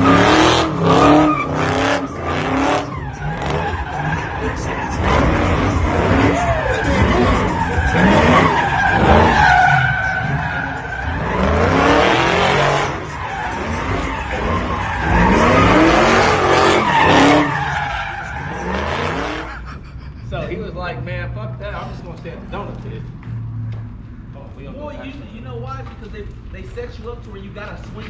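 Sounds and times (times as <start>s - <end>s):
car engine revving: 0.0s - 27.1s
tyres screeching: 0.0s - 28.0s.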